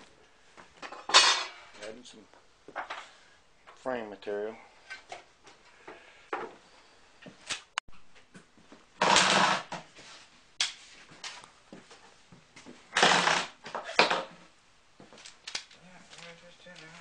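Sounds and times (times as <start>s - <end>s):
loud harsh bursts: 13.0s - 13.6s.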